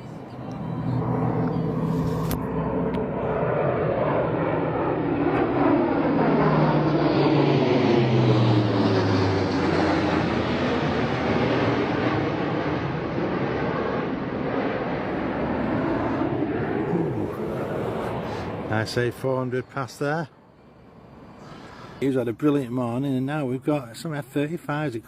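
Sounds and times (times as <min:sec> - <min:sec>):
propeller aircraft flying past: 0:00.0 - 0:25.0
broad rushing noise: 0:14.0 - 0:19.3.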